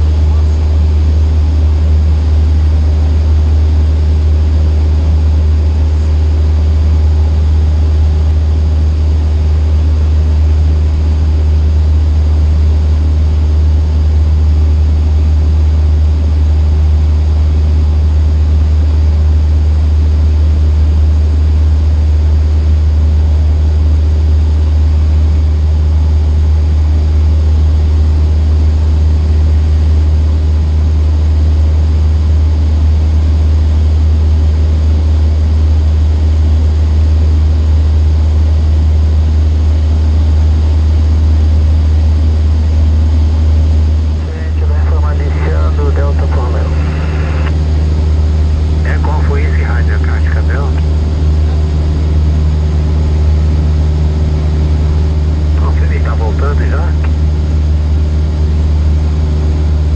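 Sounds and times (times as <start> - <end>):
aircraft engine and propeller droning: 40.8 - 59.9.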